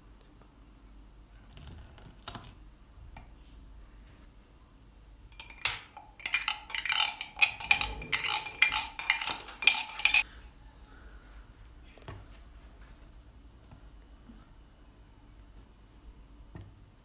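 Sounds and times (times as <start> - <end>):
utensil clinking against bowl: 5.3 - 10.4.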